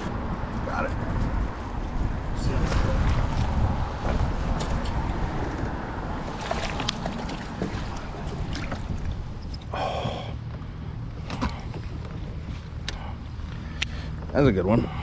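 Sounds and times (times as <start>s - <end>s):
wind buffeting microphone: 0.0s - 12.8s
water splashes: 6.1s - 9.4s.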